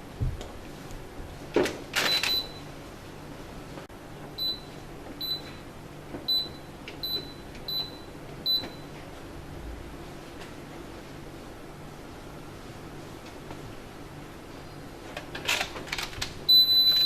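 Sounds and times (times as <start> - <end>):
washing machine buzzer beeps: 2.1 - 2.7, 4.4 - 5.6, 6.3 - 8.9, 16.5 - 17.0.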